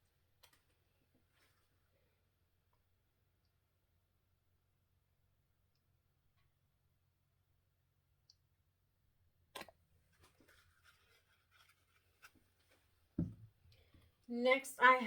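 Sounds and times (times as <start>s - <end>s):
faint taps and scrapes: 9.6s - 14.2s
cup set down with thump: 13.2s - 13.5s.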